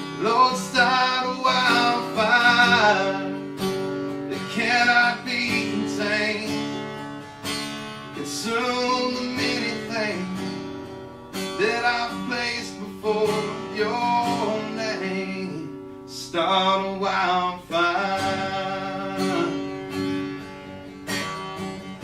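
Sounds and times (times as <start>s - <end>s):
man singing: 0.0s - 3.6s, 4.2s - 7.0s, 8.1s - 10.6s, 11.5s - 19.9s
strummed acoustic guitar: 0.0s - 22.0s.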